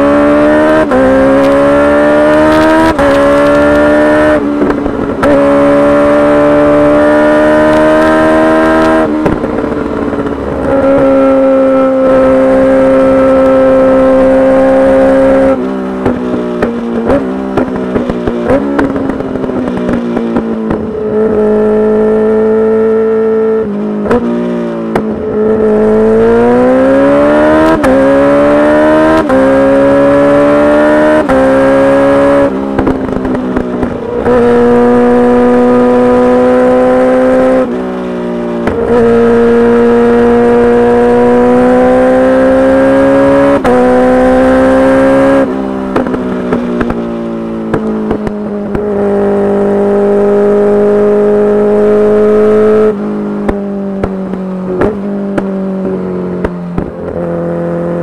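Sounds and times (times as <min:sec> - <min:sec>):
motorcycle engine at high revs: 0:00.0 - 0:58.0
exhaust crackling pops: 0:04.5 - 0:05.4, 0:08.9 - 0:10.8, 0:16.0 - 0:21.4, 0:32.4 - 0:34.8, 0:45.9 - 0:49.0, 0:53.4 - 0:57.3.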